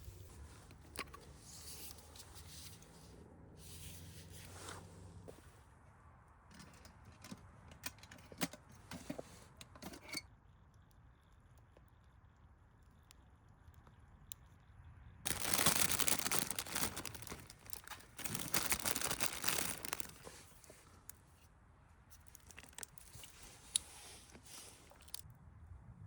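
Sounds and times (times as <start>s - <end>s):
plastic packaging tearing and crinkling: 15.3s - 20.9s, 22.1s - 25.2s
light clicks and rustles: 15.3s - 25.3s.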